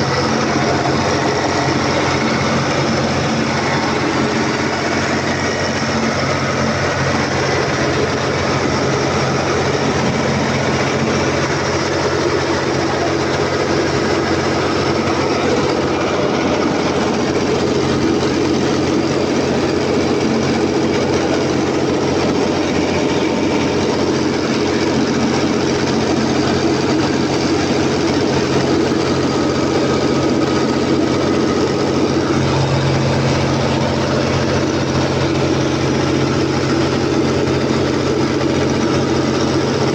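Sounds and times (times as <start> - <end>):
diesel generator engine running: 0.0 - 39.9.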